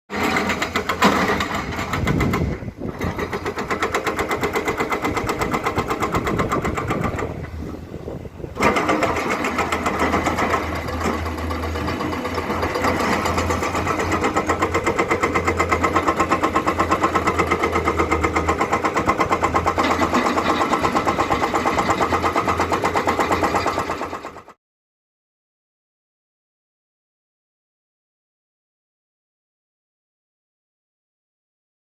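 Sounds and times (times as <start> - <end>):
excavator diesel engine pulsing: 0.1 - 24.6.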